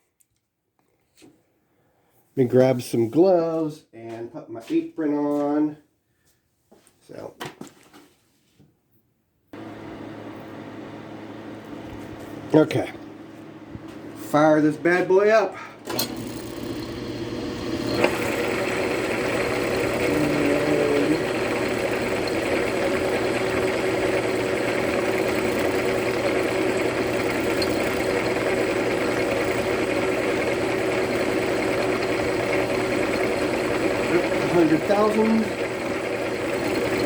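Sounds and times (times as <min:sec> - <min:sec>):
milling machine cutting: 0:09.6 - 0:37.0.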